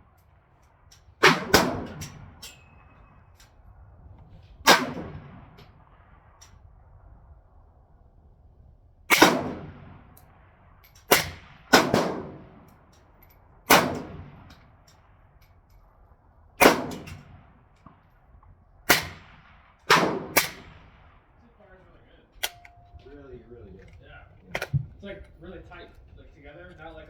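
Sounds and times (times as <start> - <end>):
suppressed rifle shots: 1.2 - 3.2, 4.6 - 6.2, 9.1 - 10.4, 11.1 - 12.6, 13.7 - 14.6, 16.6 - 18.1, 18.9 - 21.4, 22.3 - 25.0.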